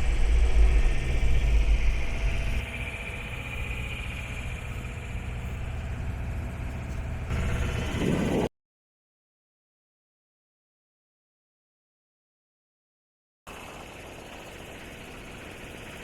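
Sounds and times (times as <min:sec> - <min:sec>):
boat engine droning: 0:00.0 - 0:08.5, 0:13.5 - 0:16.0.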